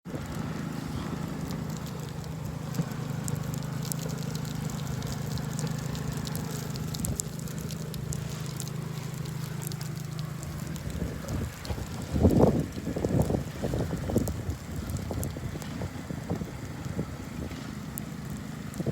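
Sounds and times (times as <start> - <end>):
precipitation ticking on a surface: 0.1 - 18.9
wind buffeting microphone: 0.1 - 18.9.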